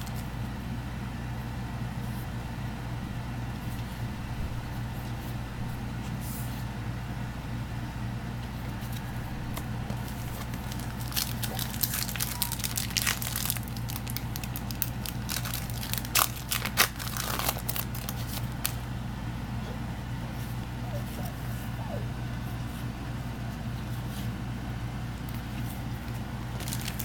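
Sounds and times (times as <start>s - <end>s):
steady low hum: 0.0s - 27.0s
foil wrappers crinkling and tearing: 9.9s - 18.9s, 26.0s - 27.0s.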